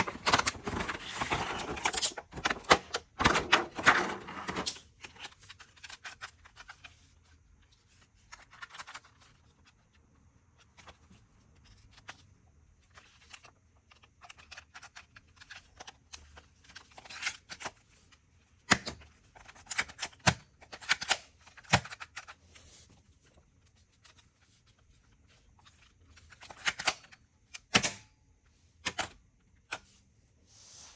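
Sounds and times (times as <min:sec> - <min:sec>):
packaging rustling: 0:00.0 - 0:06.9
plastic toys clicking and tapping: 0:18.6 - 0:22.3.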